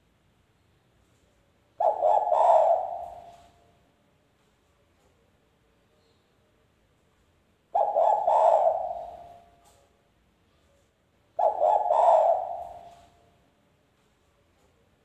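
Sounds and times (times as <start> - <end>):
dove cooing: 1.8 - 3.6, 7.8 - 9.6, 11.4 - 13.2.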